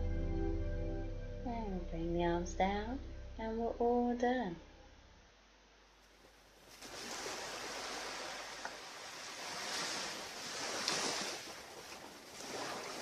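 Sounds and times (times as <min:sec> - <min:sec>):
ocean surf washing onto beach: 0:06.7 - 0:13.0.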